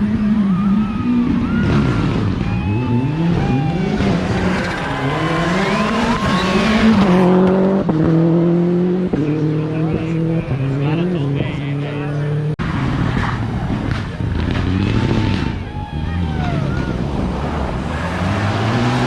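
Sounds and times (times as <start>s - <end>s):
rally car engine revving: 0.0s - 19.0s
tyres squealing: 3.4s - 7.0s.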